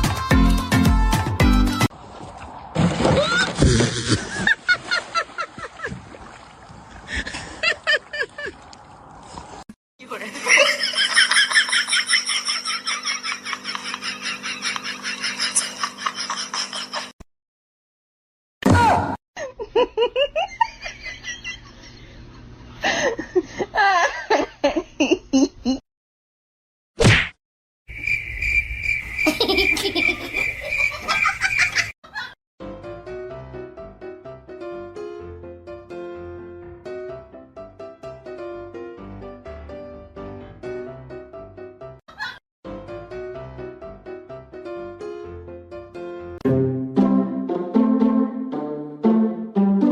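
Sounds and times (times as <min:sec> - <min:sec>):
person laughing: 0:10.2 - 0:17.1, 0:19.4 - 0:22.1, 0:22.8 - 0:25.8, 0:29.3 - 0:32.4, 0:42.1 - 0:42.4
laughter in short bursts: 0:10.4 - 0:17.1.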